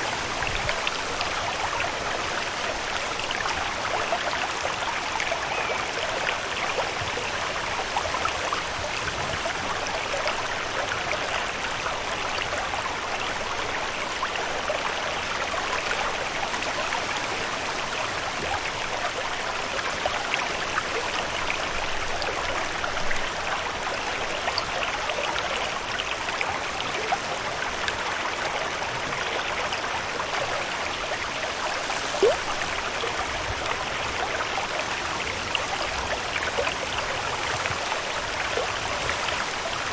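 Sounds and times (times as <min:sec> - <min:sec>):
running water rushing: 0:00.0 - 0:39.9.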